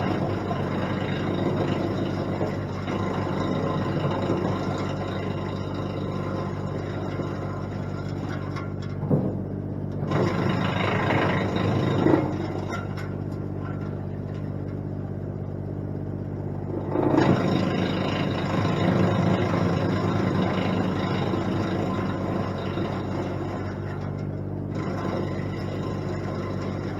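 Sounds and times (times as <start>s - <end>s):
wood chipper engine running: 0.0s - 26.9s.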